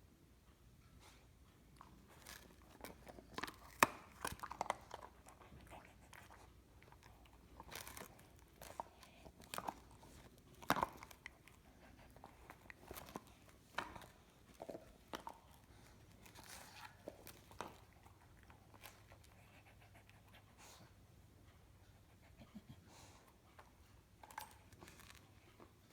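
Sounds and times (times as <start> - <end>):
dog crunching a biscuit: 1.8 - 19.5, 24.2 - 25.9.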